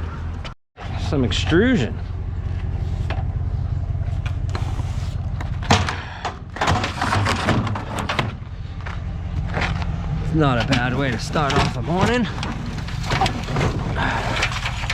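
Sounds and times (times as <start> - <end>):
vehicle engine running: 0.0 - 14.9
clatter and rattles: 2.3 - 14.9.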